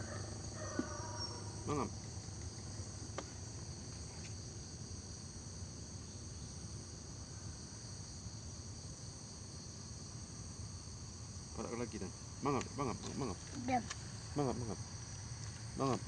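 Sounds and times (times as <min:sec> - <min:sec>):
insect chorus high tones: 0:00.0 - 0:16.0.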